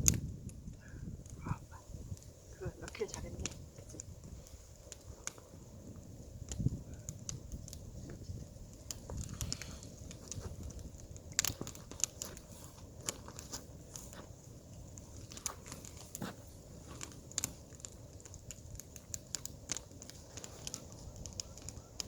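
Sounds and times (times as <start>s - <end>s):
wood fire crackling and snapping: 0.0s - 22.0s.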